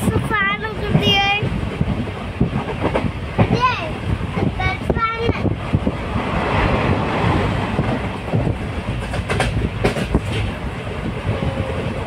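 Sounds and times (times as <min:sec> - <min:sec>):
train rumble: 0:00.0 - 0:12.0
wheels clicking over rail joints: 0:07.8 - 0:10.7.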